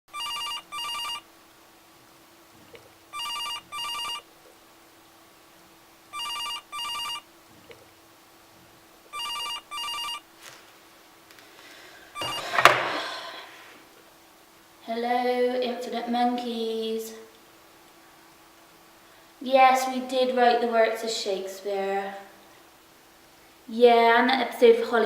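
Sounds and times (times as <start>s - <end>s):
telephone double ring: 0.1s - 1.2s, 3.1s - 4.2s, 6.2s - 7.2s, 9.1s - 10.2s, 12.2s - 13.0s.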